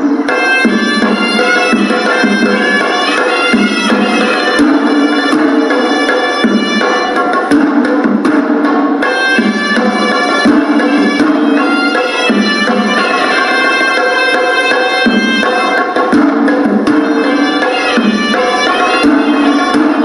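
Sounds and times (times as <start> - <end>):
double-reed pipe melody: 0.0 - 7.4, 9.1 - 16.0, 17.0 - 20.0
beaten drums: 0.0 - 20.0.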